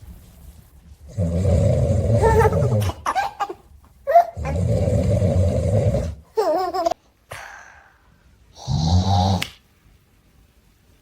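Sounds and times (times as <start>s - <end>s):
man snoring: 1.1s - 2.8s, 4.4s - 6.2s, 8.6s - 9.4s
baby's high wavering vocalisation: 4.1s - 4.6s.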